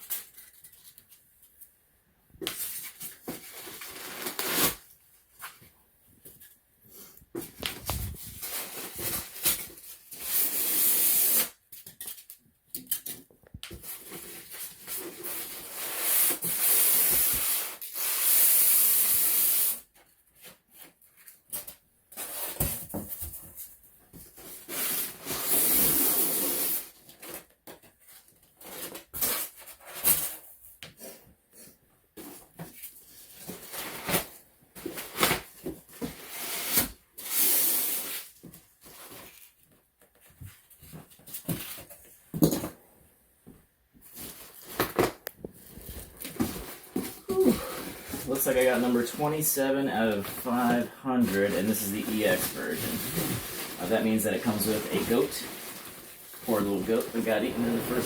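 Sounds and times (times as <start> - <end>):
cardboard scraping: 44.0 - 58.0
packing material rustling: 44.1 - 58.0.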